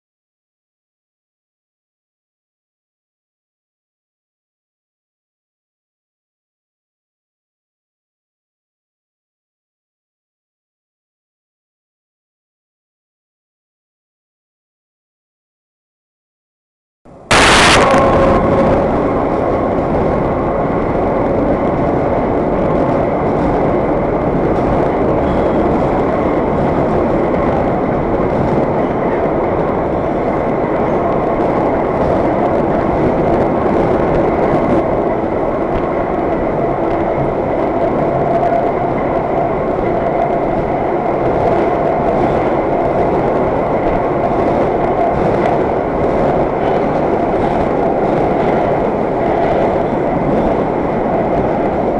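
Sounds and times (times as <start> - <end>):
subway train rumbling: 17.1 - 51.9.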